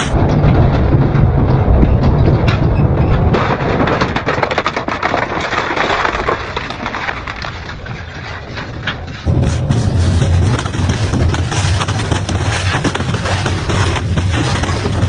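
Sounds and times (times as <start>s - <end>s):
shredder cracking and snapping: 3.3s - 8.0s
shredder rumble: 9.2s - 15.0s.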